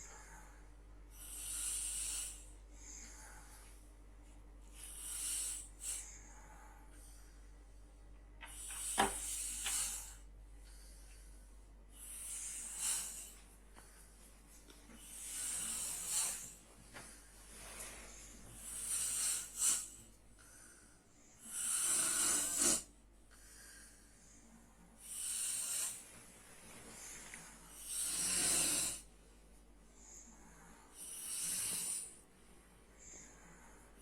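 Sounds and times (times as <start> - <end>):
person snoring: 15.0 - 16.6, 21.4 - 22.9, 27.7 - 29.1.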